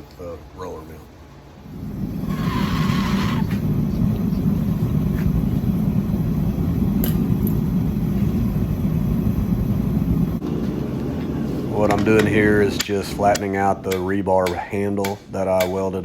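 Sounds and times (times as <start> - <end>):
shop machinery rumbling: 1.5 - 15.6.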